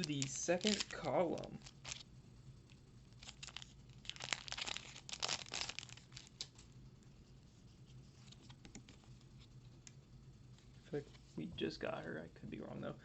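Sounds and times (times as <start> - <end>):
foil wrapper crinkling and tearing: 0.0 - 2.1, 3.1 - 6.6.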